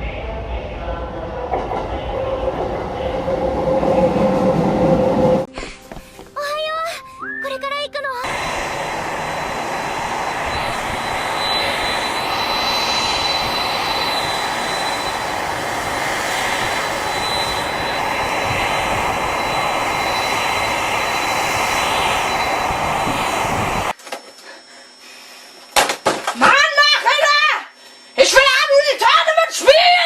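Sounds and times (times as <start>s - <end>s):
loud rushing noise: 8.2s - 23.9s
thin high whine: 8.2s - 26.0s.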